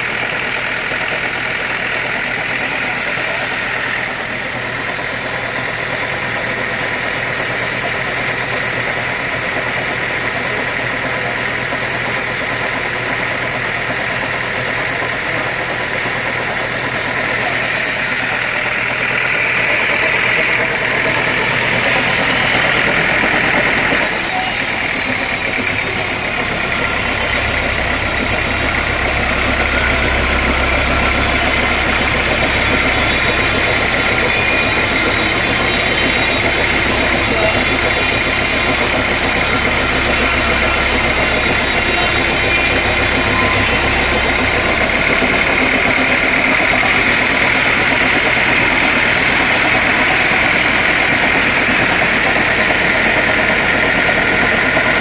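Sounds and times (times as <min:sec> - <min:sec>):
high mechanical whine: 0:00.0 - 0:55.0
sawmill machinery drone: 0:00.0 - 0:55.0
low hum: 0:25.0 - 0:52.7.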